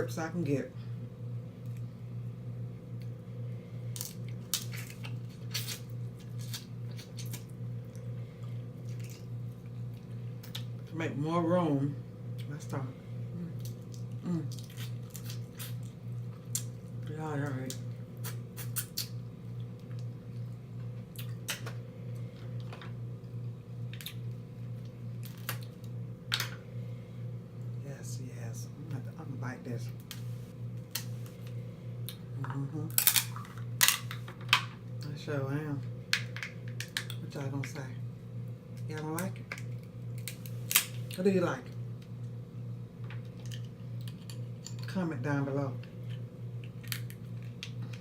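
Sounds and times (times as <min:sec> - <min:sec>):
steady low hum: 0:00.0 - 0:48.0
cracking crab legs while eating: 0:03.9 - 0:10.9, 0:13.6 - 0:26.0, 0:30.0 - 0:34.7, 0:36.1 - 0:37.2, 0:38.7 - 0:42.4, 0:43.1 - 0:44.9, 0:45.8 - 0:48.0.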